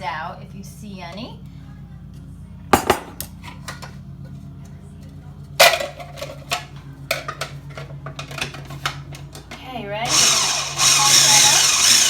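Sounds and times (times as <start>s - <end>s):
kitchen knocks and clicks: 2.8s - 3.8s.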